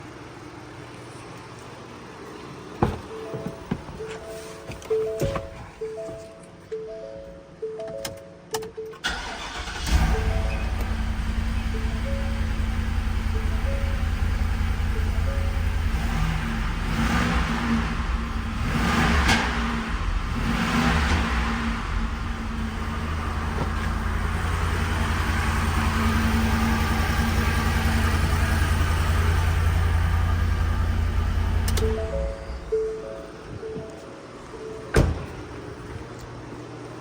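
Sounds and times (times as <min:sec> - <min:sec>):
truck engine idling and revving: 0:09.1 - 0:32.9.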